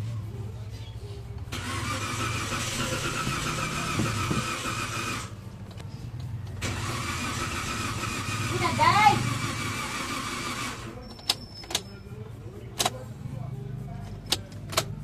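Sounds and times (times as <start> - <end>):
starter motor cranking engine: 1.5 - 5.4, 6.6 - 11.0.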